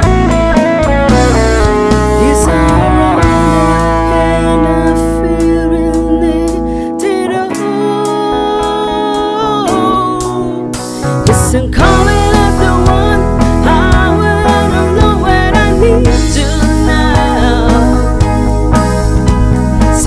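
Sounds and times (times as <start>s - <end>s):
band music with guitar: 0.0s - 20.0s
person singing: 1.2s - 18.8s.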